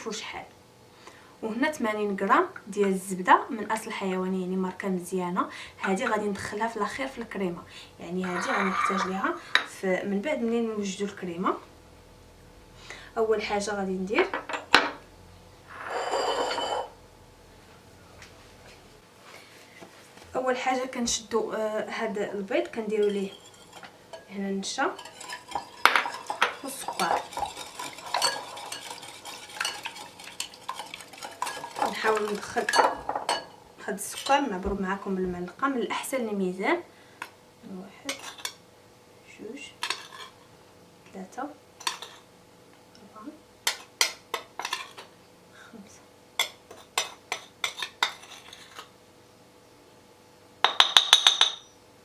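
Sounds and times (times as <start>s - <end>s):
utensil scraping a mixing bowl: 22.9s - 33.4s.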